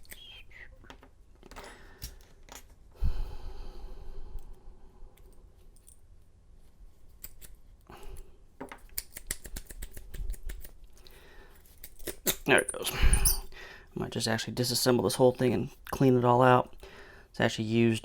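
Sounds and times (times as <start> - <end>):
padlock metallic clicks and rattles: 7.2 - 7.6, 8.7 - 10.8, 11.8 - 13.5.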